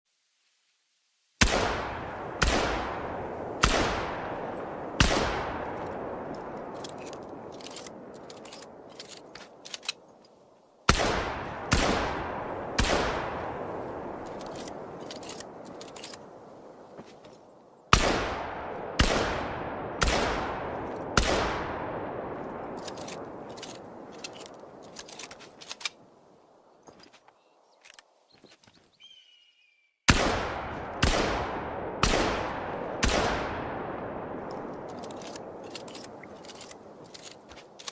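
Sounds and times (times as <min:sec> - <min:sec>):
shotgun shots booming: 0:01.4 - 0:06.7, 0:10.9 - 0:15.6, 0:17.9 - 0:23.5, 0:30.1 - 0:35.6.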